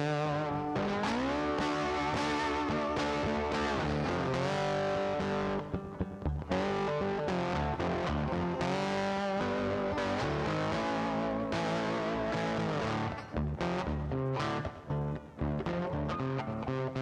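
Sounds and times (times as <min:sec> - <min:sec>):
bass: 0:00.0 - 0:17.0
distorted electric guitar: 0:00.0 - 0:17.0.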